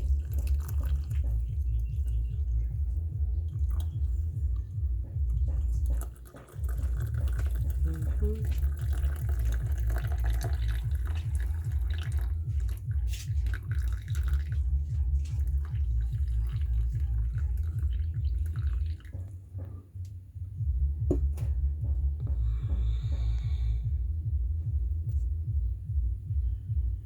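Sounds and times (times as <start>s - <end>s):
moka pot gurgling and sputtering: 0.0s - 19.4s
low pulsing rumble: 0.0s - 27.0s.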